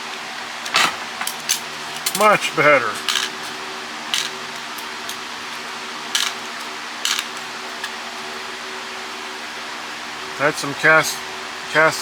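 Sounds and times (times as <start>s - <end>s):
fan humming: 0.0s - 12.0s
metal parts clicking and scraping: 0.6s - 8.0s.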